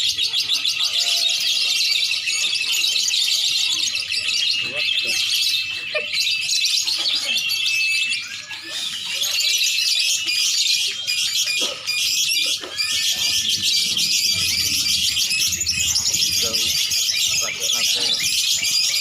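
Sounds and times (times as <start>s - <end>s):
songbirds chirping and singing: 0.0s - 19.0s.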